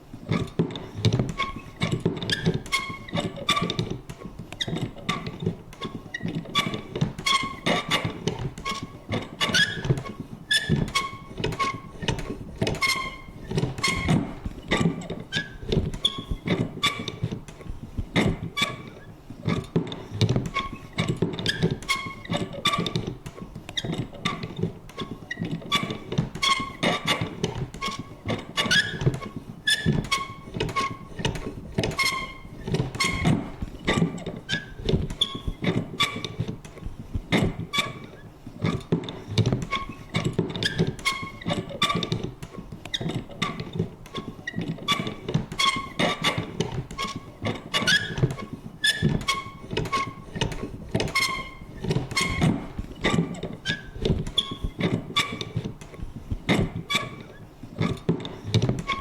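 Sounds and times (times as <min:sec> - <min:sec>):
squeaky mechanism creaks: 0:00.2 - 0:59.0
paper punch clicking and knocking: 0:00.3 - 0:59.0.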